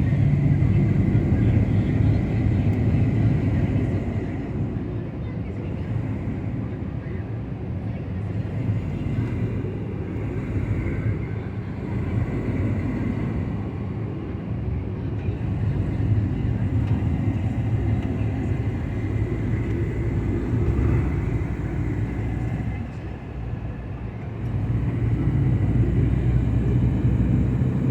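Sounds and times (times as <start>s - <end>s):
car road noise rumble: 0.0s - 27.9s.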